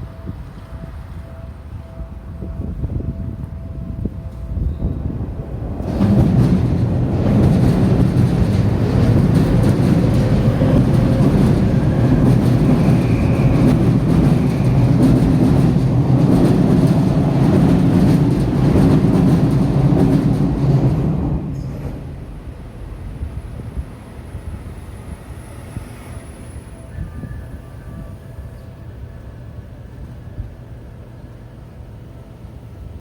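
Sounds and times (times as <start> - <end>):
train wheels rumbling on rail: 0.0 - 33.0
clatter over rail joints: 5.8 - 22.2.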